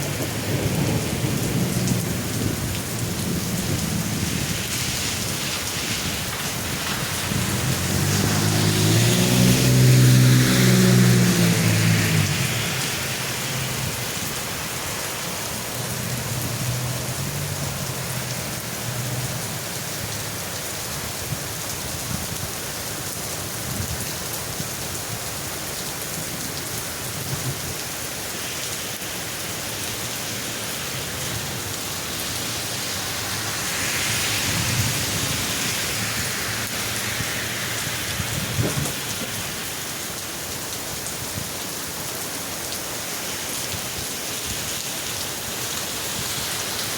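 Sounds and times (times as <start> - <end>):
thunder rumbling: 0.0 - 14.6, 32.3 - 39.7
heavy rain pouring: 0.0 - 46.9.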